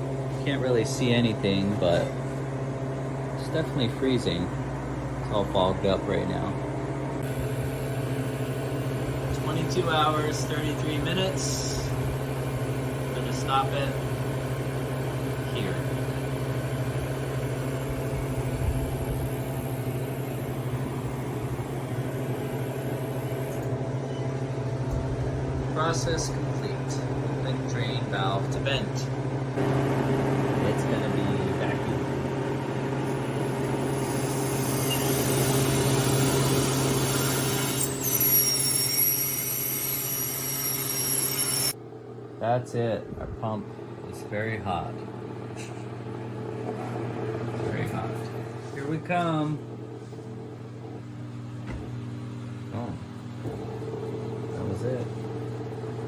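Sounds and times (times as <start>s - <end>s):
vacuum pump hum: 0.0s - 56.0s.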